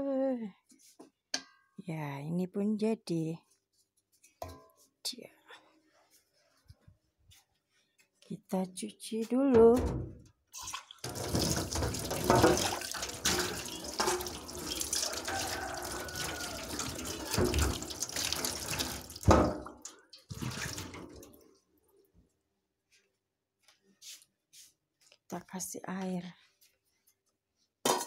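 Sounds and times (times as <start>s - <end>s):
tap water running: 10.6s - 21.4s.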